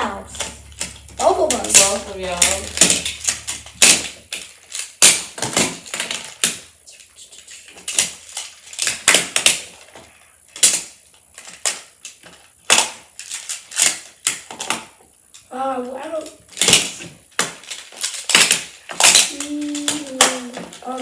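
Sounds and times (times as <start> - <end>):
plastic building blocks clicking: 16.2 - 21.0.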